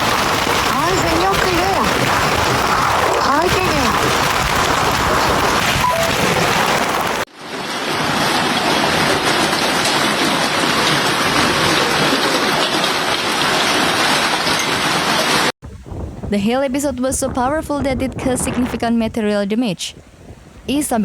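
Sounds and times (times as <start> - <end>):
hail and rain pelting down: 0.0 - 15.5.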